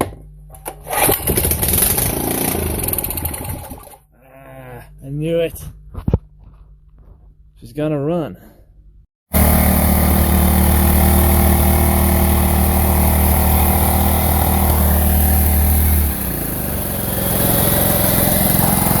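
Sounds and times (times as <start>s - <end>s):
small generator engine running: 1.4s - 3.8s, 9.3s - 19.0s.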